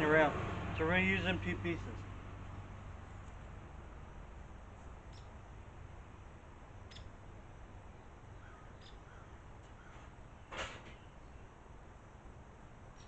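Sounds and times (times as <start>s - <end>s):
crow caw: 8.4s - 10.1s.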